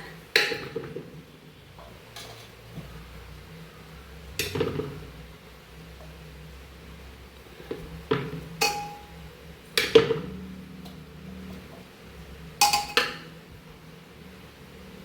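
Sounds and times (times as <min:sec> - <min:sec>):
metal utensils clinking on cookware: 0:08.6 - 0:09.2, 0:12.6 - 0:13.3.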